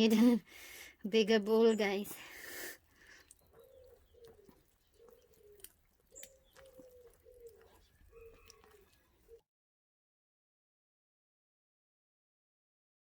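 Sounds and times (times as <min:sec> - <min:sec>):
pigeon cooing: 0:03.4 - 0:09.4.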